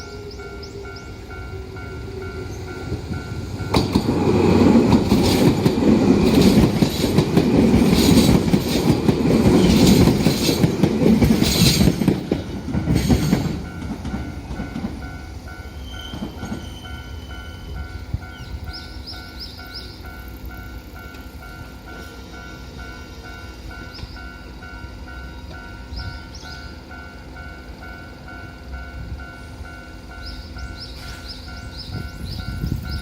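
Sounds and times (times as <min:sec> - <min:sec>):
electric train passing: 0:00.0 - 0:33.0
level crossing warning bell: 0:00.0 - 0:33.0
wheels clacking over rail joints: 0:02.3 - 0:15.2.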